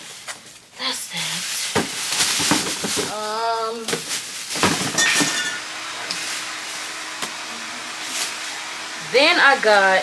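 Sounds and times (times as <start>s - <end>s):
boxes knocking and rustling: 1.6s - 5.6s.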